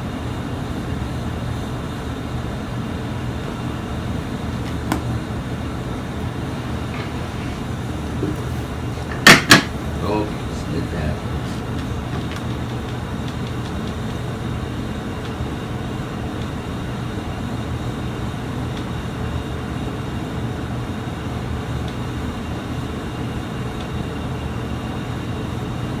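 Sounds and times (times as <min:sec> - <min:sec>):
machine rumbling and humming: 0:00.0 - 0:26.0.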